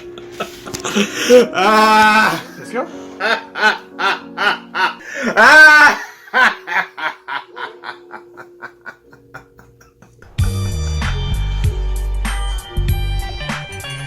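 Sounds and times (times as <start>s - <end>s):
person laughing: 0.1s - 10.9s.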